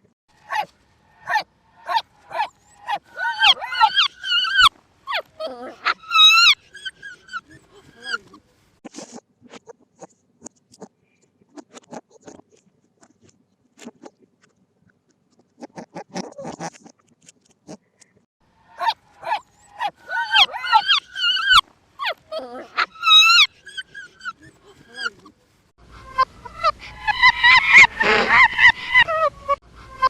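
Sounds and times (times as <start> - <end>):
high animal calls: 0.4 - 8.4, 18.7 - 25.3, 26.0 - 30.0.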